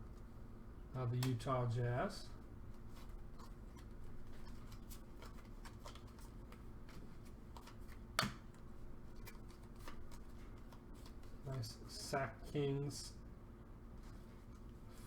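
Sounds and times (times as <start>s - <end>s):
cards flipping and rustling: 2.9s - 11.4s.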